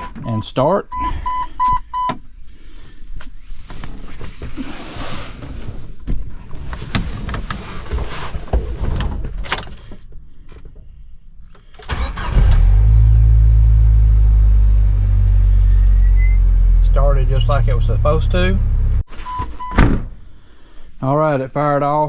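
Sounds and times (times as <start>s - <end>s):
car engine cranking and idling: 11.7s - 19.1s.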